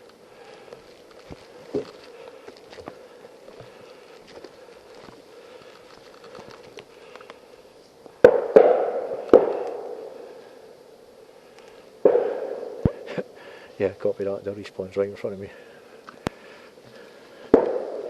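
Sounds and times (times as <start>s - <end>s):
sharp bangs: 8.2s - 10.2s, 12.0s - 13.3s, 17.5s - 18.0s.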